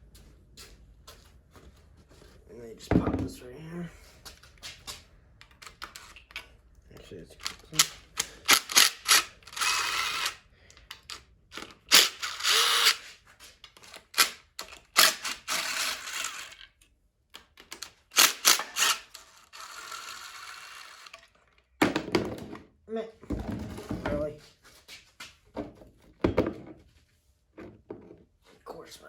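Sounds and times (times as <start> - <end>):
hand ratchet clicking: 7.4 - 13.0, 13.9 - 16.6, 17.8 - 21.2.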